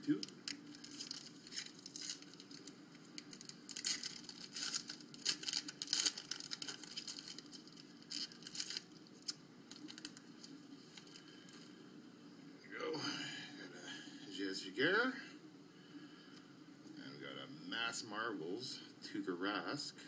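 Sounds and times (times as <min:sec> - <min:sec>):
wrapper being torn and crinkled: 0:00.1 - 0:11.3.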